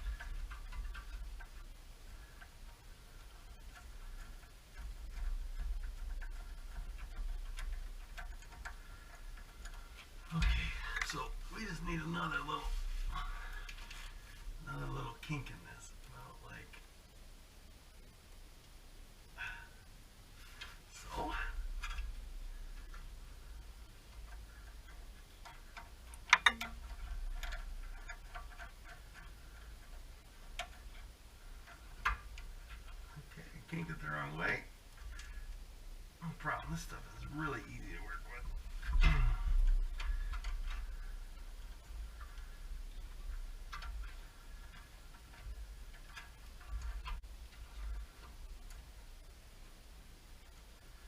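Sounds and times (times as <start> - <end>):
faint low rumble: 0.0 - 51.0
metallic clicks and taps: 22.8 - 33.1
metal brake line clicks and taps: 24.2 - 29.3.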